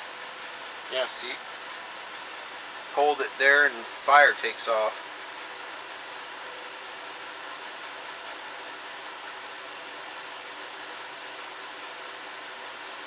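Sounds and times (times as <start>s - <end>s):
small fan rushing air: 0.0s - 13.0s.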